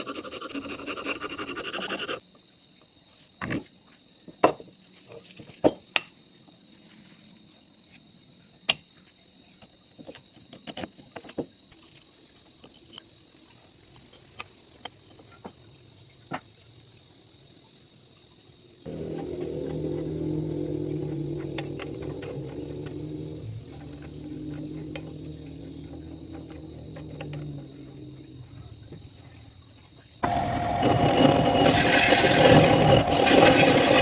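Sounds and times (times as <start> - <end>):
low hum: 18.9 - 29.6
steady high-pitched tone: 30.2 - 34.0.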